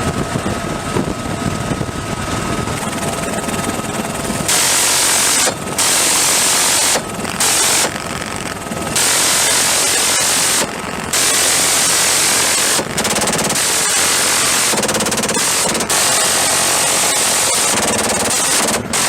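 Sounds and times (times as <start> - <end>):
machine gun rapid fire: 3.1 - 8.0, 8.6 - 19.0.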